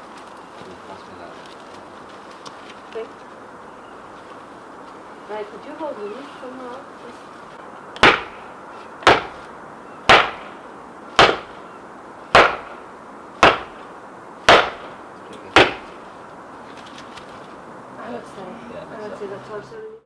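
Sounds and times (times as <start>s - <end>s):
hammer blows on wood: 8.0s - 11.7s, 12.3s - 16.0s.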